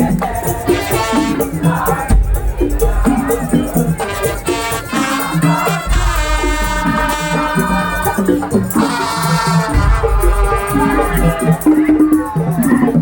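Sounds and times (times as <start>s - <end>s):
drums and rattles beat: 0.0s - 13.0s
held melody: 0.0s - 13.0s
deep bass: 2.0s - 4.1s, 9.7s - 12.0s.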